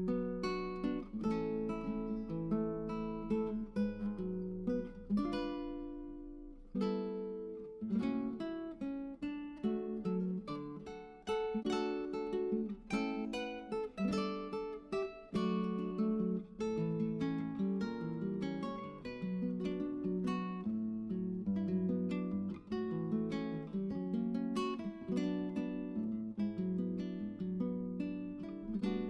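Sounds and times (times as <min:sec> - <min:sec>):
acoustic guitar picking melody: 0:00.0 - 0:29.0.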